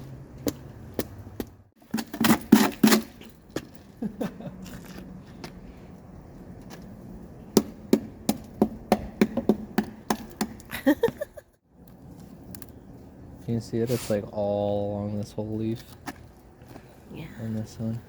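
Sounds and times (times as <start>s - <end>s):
footsteps crunching on icy snow: 3.0s - 5.8s.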